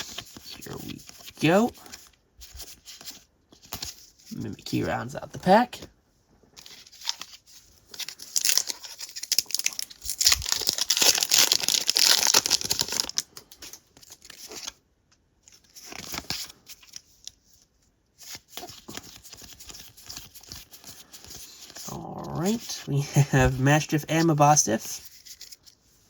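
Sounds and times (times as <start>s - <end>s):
foil wrapper crinkling and tearing: 6.7s - 14.8s.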